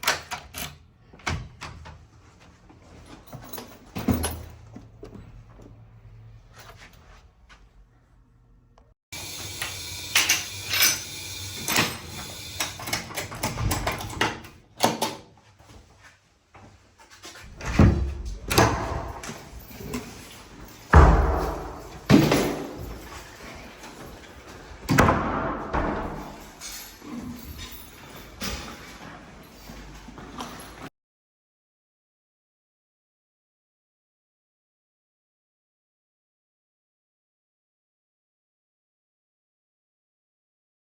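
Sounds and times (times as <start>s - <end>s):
doors slamming: 17.4s - 28.9s.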